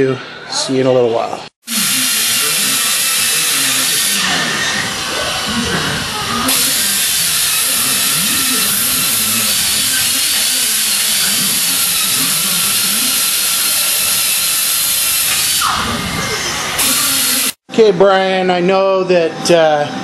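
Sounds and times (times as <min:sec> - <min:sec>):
metalworking tool hissing on metal: 0:01.6 - 0:15.6, 0:16.8 - 0:17.6.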